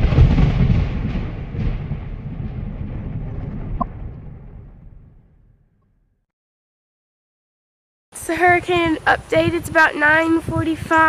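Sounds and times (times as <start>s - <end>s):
thunder rumble: 0.0s - 5.7s.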